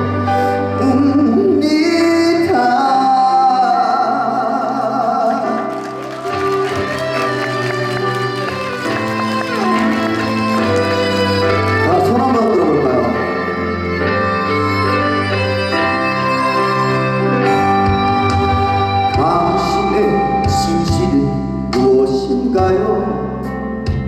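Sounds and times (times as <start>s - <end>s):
recorded backing music: 0.0s - 24.0s
man singing with vibrato: 0.8s - 5.7s.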